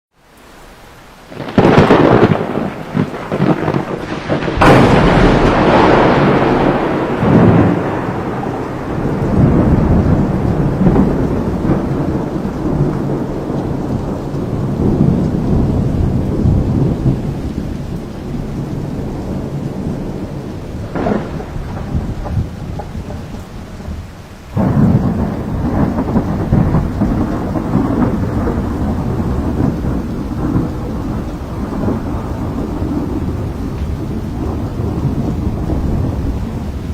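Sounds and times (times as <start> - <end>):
thunder clap: 1.3 - 36.9
thunder rumbling: 1.3 - 36.9.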